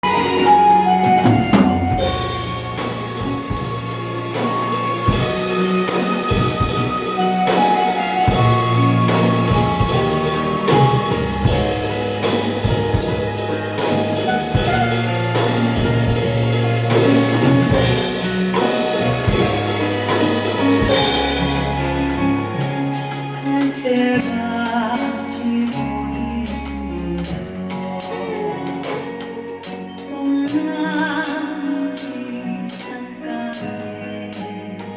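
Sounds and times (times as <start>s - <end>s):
drum kit playing: 0.0s - 34.9s
recorded song: 0.0s - 34.9s
cymbal strikes: 24.2s - 28.2s, 28.8s - 33.0s, 33.6s - 34.6s.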